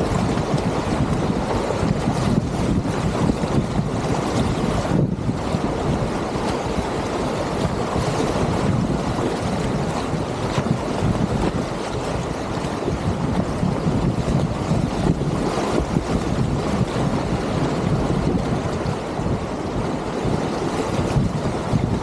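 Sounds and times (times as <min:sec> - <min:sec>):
whitewater rapids rushing: 0:00.0 - 0:22.0
wind buffeting microphone: 0:00.0 - 0:22.0.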